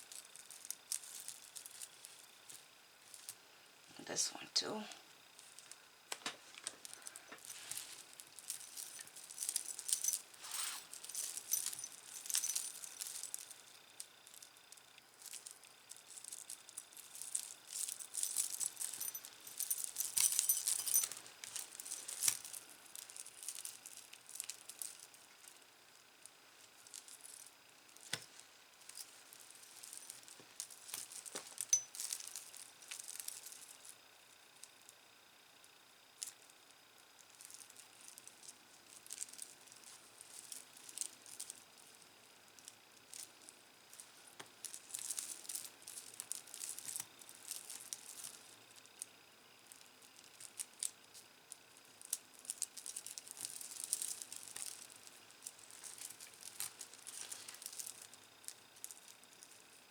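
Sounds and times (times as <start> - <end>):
metal chains and beads jangling: 0.0 - 3.4, 6.8 - 14.5, 15.2 - 25.4, 26.7 - 33.9, 37.3 - 41.6, 52.5 - 58.1.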